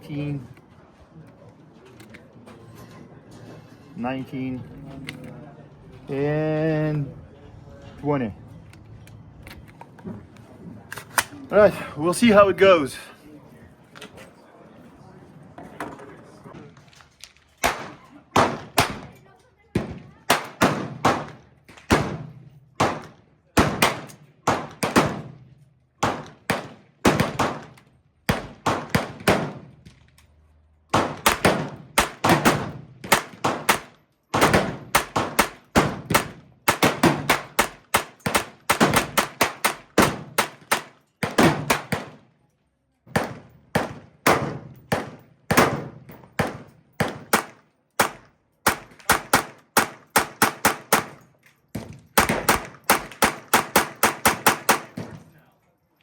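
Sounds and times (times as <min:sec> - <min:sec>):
rifle shots: 0:17.6 - 0:19.2, 0:19.8 - 0:25.4, 0:26.0 - 0:29.8, 0:30.9 - 0:42.2, 0:43.1 - 0:51.2, 0:52.2 - 0:55.2.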